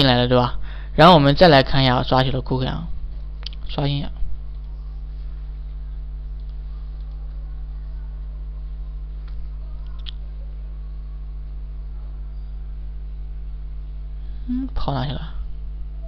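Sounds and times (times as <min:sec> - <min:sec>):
electrical hum: 0:00.0 - 0:16.0
faint clicks: 0:06.3 - 0:07.4.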